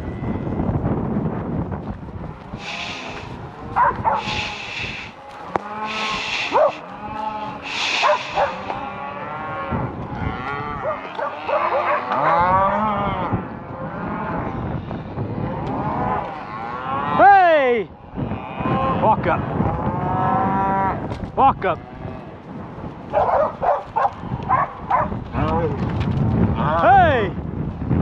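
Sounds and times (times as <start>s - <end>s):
cows bawling and mooing: 2.3s - 25.6s
short bursts of hiss: 2.6s - 3.3s, 4.2s - 5.1s, 5.9s - 6.8s, 7.6s - 8.6s.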